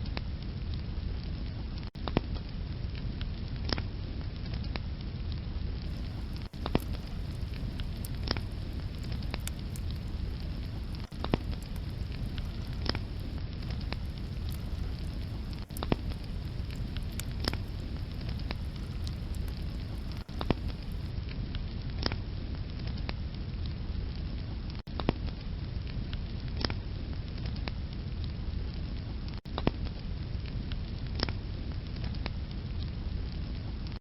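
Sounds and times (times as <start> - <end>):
fire crackling and popping: 5.9 - 21.1
low rumble of flames: 5.9 - 21.1.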